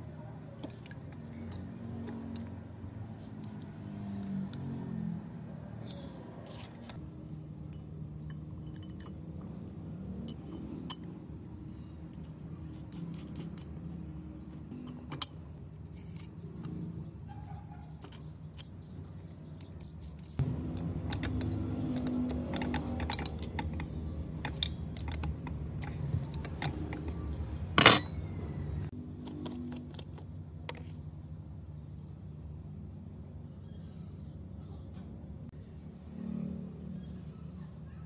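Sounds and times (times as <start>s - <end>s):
metal parts clinking: 0.6s - 2.5s, 7.7s - 9.4s, 10.2s - 11.1s, 12.1s - 16.9s, 17.8s - 18.9s, 19.5s - 28.7s.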